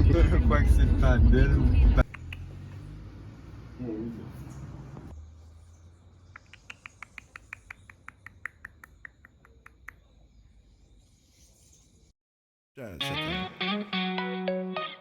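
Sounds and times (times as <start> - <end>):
small animal chirping: 2.0 - 2.7, 6.2 - 10.2.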